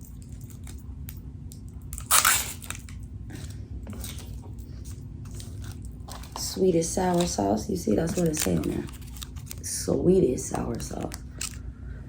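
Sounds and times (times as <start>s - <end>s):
foil lid ripping: 2.0s - 2.9s
plastic cup clicks and crackles: 8.0s - 9.7s, 10.6s - 11.6s.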